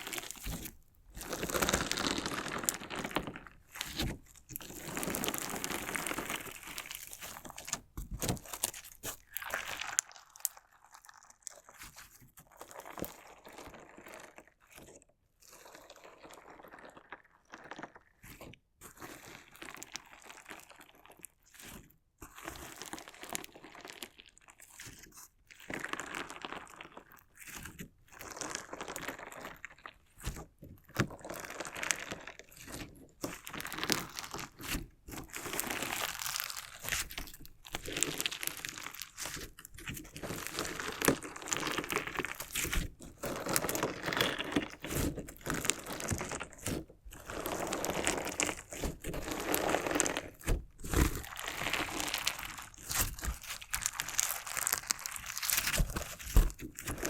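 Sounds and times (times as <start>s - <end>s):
crunchy slime crackling: 0.0s - 14.9s, 15.7s - 18.3s, 30.9s - 57.0s.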